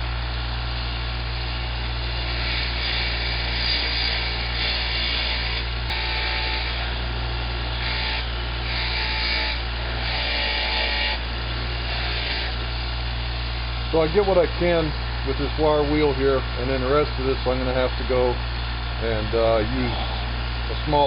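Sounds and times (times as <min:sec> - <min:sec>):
wire wheel motor humming: 0:00.0 - 0:21.0
harsh scratching of metal on wire wheel: 0:01.4 - 0:07.1.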